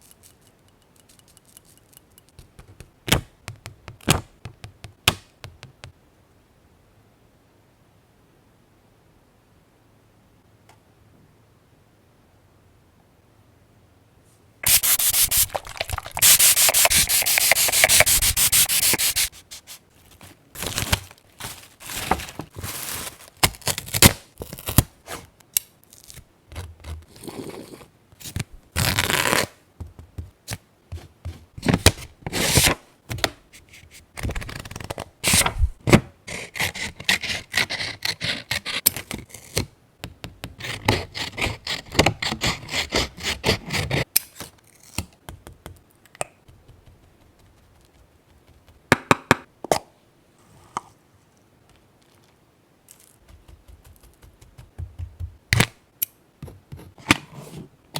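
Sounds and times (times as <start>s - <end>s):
paper rubbing and scraping: 14.6s - 23.2s.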